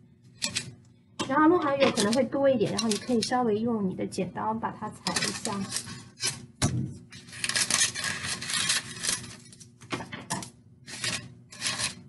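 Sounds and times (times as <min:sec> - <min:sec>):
scissors cutting paper: 0:00.4 - 0:00.8, 0:01.7 - 0:03.4, 0:05.0 - 0:06.5, 0:07.1 - 0:09.7, 0:10.4 - 0:12.0
baking paper rustling and crinkling: 0:01.7 - 0:03.4, 0:05.0 - 0:12.0.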